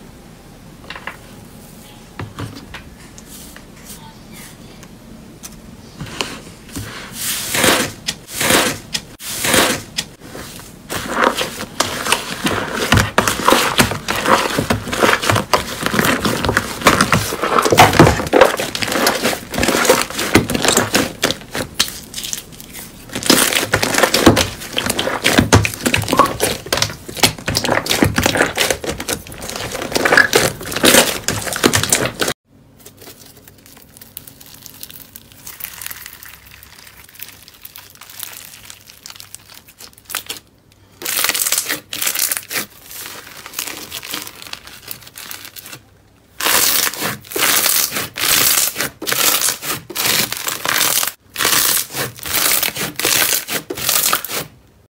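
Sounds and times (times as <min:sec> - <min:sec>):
slime squished by hand: 0:10.9 - 0:32.3.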